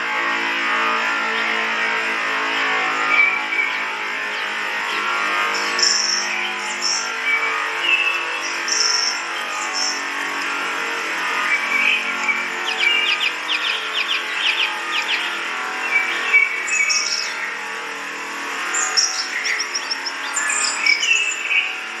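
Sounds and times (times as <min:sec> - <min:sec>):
birds chirping and singing: 0:00.6 - 0:22.0.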